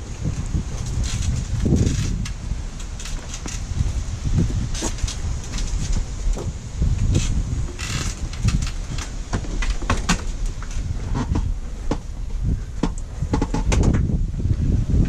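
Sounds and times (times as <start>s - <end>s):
low rumble: 0.0s - 15.0s
knocks and clanks of hardware: 7.7s - 10.3s.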